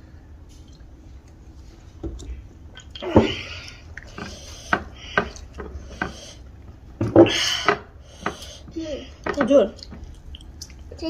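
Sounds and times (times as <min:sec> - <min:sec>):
wet chewing and smacking: 0:09.4 - 0:11.0.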